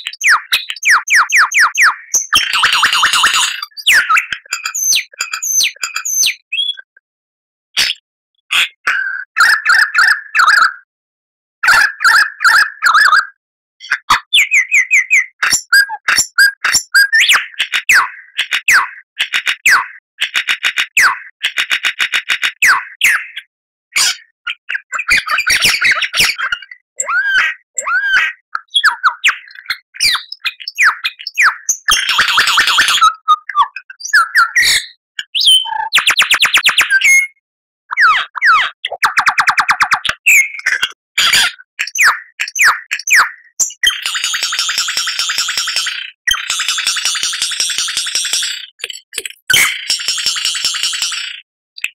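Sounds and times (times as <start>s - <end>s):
lyrebird singing: 0.0s - 6.9s, 13.8s - 18.9s, 24.9s - 37.3s, 37.9s - 49.8s.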